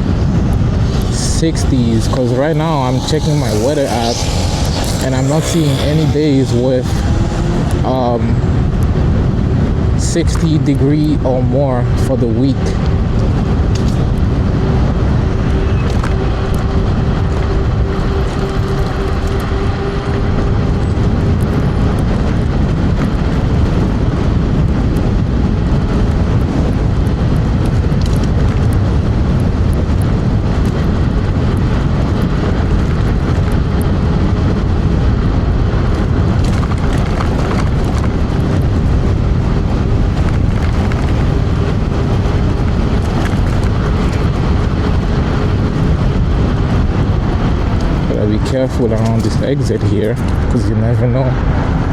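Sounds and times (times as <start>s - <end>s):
wind buffeting microphone: 0.0s - 51.9s
faint motor whine: 0.6s - 9.6s.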